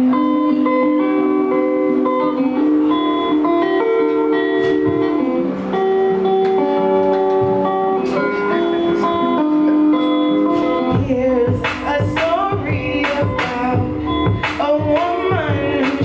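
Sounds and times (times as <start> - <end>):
held guitar chords: 0.0 - 16.0
low drum beat: 11.0 - 16.0.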